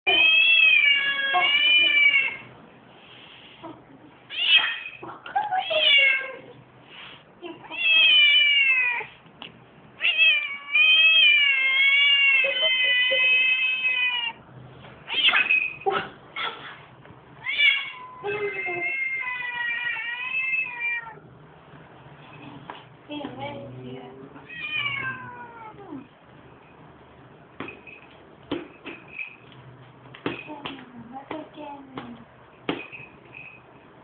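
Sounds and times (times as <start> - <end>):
cats yowling in a fight: 0.1 - 2.5, 4.3 - 5.0, 7.7 - 9.2, 10.0 - 14.4, 15.0 - 16.7, 17.4 - 21.2, 24.4 - 26.0.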